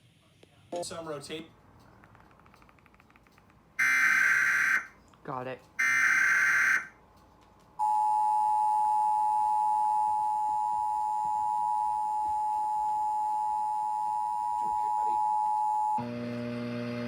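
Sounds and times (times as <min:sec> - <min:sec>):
screeching data burst: 0:03.8 - 0:04.9, 0:05.8 - 0:06.9.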